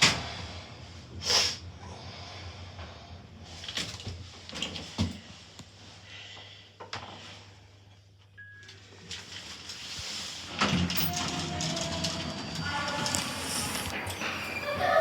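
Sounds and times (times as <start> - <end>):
lift doors sliding: 9.8 - 15.0
busy mix with steady tone: 12.3 - 15.0.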